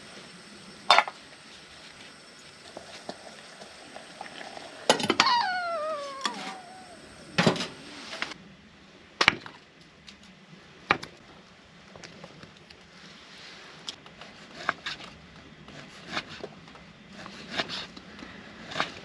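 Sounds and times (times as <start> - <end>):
squeak sliding down in pitch: 5.2 - 8.4.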